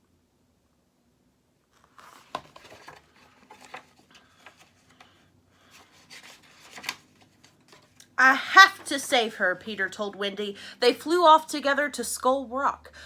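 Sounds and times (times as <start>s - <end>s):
book page rustling: 1.7s - 10.0s.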